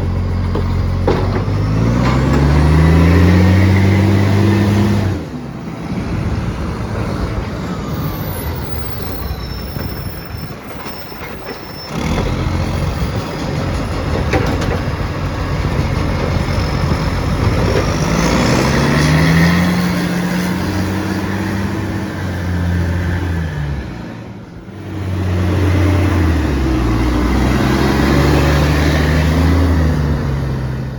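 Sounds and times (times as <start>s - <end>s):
diesel truck engine roaring: 0.0s - 30.9s.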